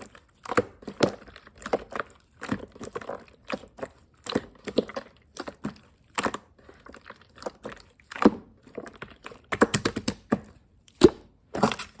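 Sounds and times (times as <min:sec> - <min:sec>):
slime clicking and popping: 0:07.4 - 0:12.0.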